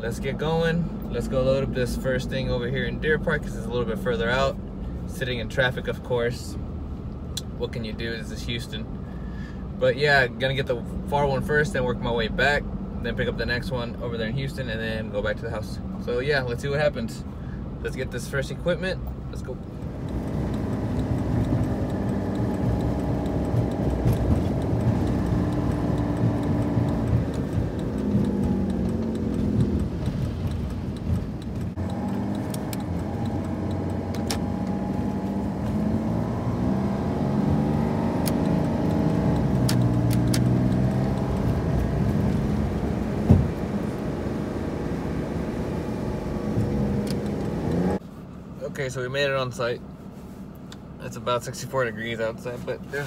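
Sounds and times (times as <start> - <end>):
diesel truck engine running: 19.1 - 48.0.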